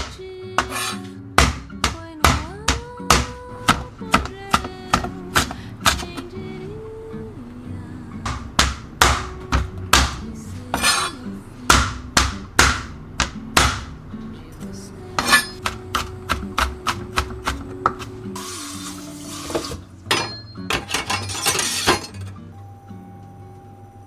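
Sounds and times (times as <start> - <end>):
knife chopping on cutting board: 0.0 - 6.4, 8.3 - 14.0, 15.2 - 19.8
soft background music: 0.0 - 24.0.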